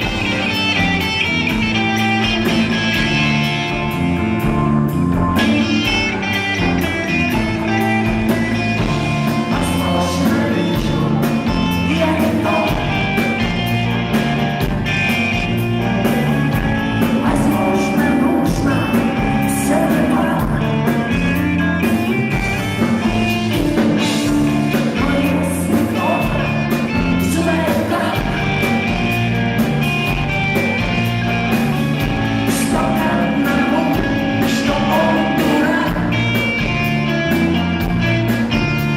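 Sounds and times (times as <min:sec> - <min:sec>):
rock band playing: 0:00.0 - 0:38.9
person singing: 0:08.8 - 0:29.1, 0:32.0 - 0:37.1.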